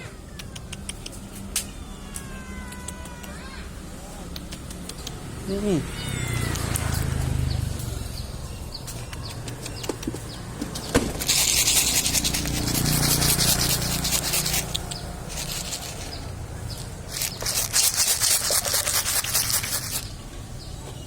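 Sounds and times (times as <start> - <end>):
crackling and rustling: 8.8 - 21.0
scraping: 10.1 - 20.4.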